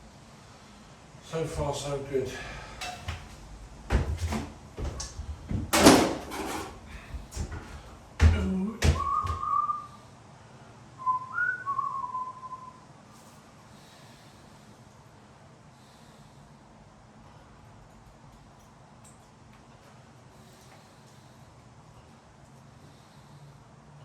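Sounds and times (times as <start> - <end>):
handling rustles and knocks: 2.8 - 9.5
person whistling: 8.9 - 10.0, 11.0 - 12.9.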